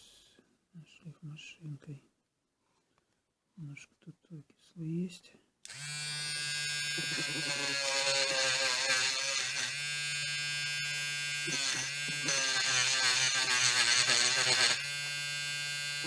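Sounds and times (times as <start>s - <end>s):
wire brush grinder whining on metal: 5.7s - 16.0s.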